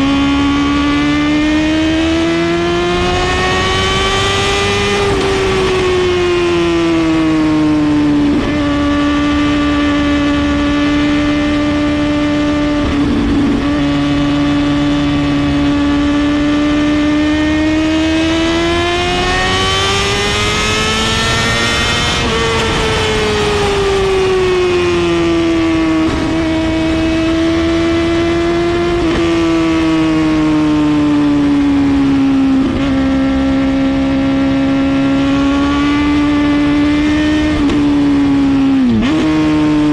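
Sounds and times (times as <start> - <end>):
motorcycle engine at high revs: 0.0 - 39.9.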